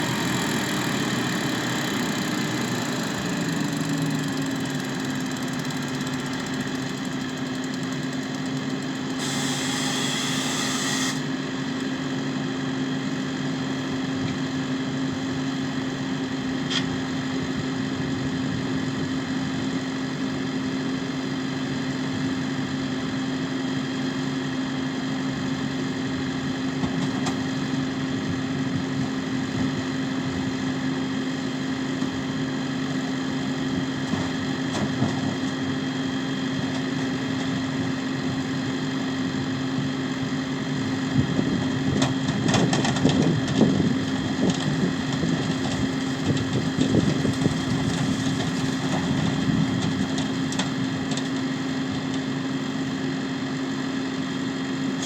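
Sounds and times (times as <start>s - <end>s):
tractor engine running: 0.0s - 14.6s, 24.4s - 55.0s
irregular rumbling and rattling: 41.2s - 51.6s.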